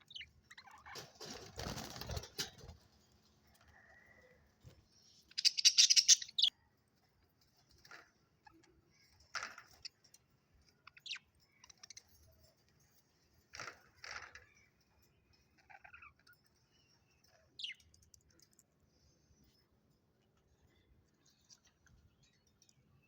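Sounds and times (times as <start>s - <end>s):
budgerigars chirping: 5.3s - 6.5s.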